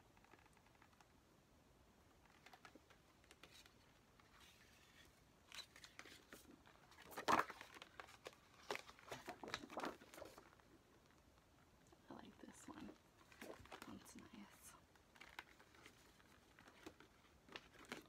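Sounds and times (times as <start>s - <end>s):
paper and plastic rustling: 2.3s - 11.2s, 12.7s - 18.0s.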